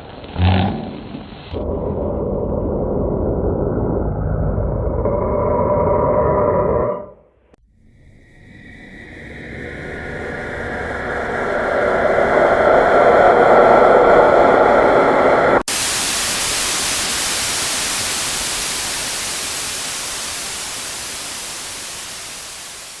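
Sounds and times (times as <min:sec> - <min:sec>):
dense loud noise with held tones: 0:01.6 - 0:23.0
harsh static hiss: 0:15.7 - 0:23.0.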